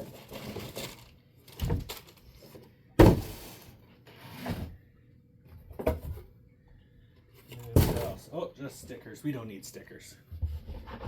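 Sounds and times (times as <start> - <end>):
cardboard box knocks and thuds: 3.0 - 3.4.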